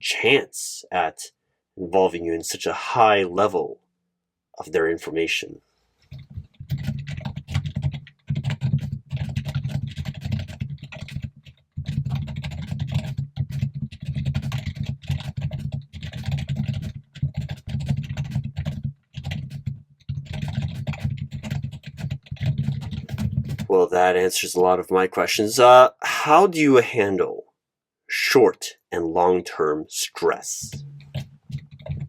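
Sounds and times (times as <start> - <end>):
fast typing on keyboard: 6.0 - 23.8, 30.6 - 32.0.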